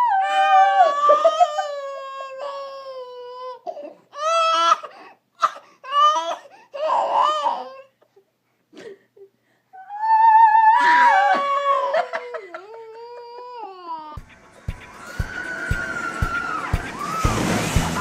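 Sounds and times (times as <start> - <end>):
young child crying: 9.8 - 14.2.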